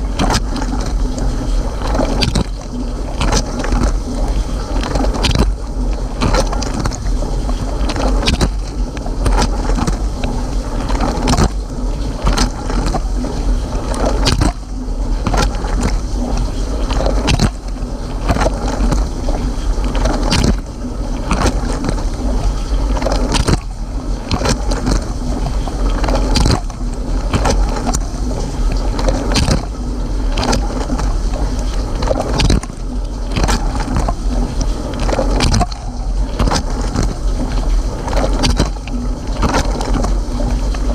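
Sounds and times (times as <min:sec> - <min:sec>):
low hum: 0:00.0 - 0:40.9
water spraying inside dishwasher: 0:00.0 - 0:40.9.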